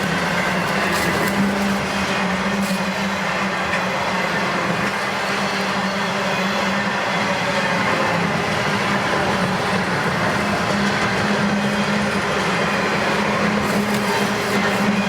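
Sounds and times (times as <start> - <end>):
freight train rolling on rails: 0.0 - 15.0.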